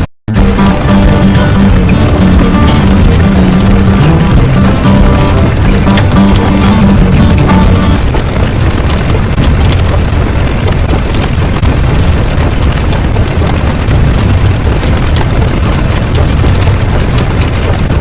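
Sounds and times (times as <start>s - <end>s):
loud low rumbling noise: 0.0s - 18.0s
musical tones: 0.3s - 8.2s.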